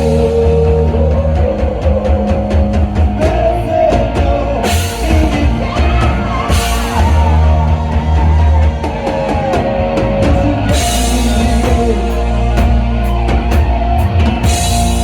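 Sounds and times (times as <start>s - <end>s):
rock band playing live: 0.0s - 15.0s.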